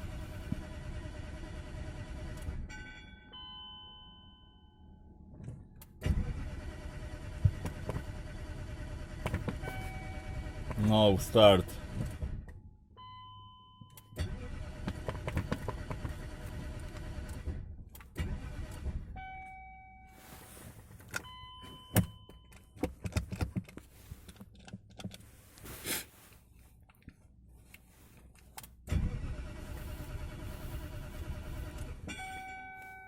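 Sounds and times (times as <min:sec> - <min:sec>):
engine cranking by starter: 0:00.0 - 0:02.7, 0:05.9 - 0:12.5, 0:14.2 - 0:19.3, 0:28.6 - 0:32.5.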